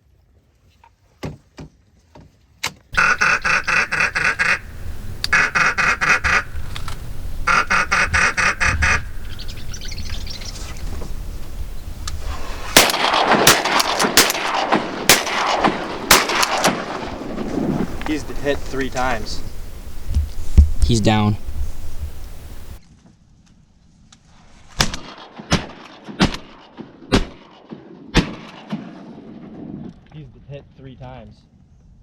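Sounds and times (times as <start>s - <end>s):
shotgun shots: 3.0s - 9.8s, 10.6s - 20.0s, 24.8s - 29.7s
duck quacking: 3.0s - 20.1s.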